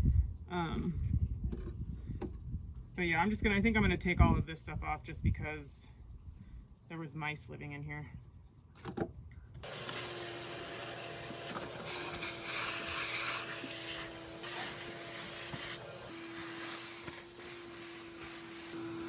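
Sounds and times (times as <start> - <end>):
small motor humming: 9.6 - 19.0.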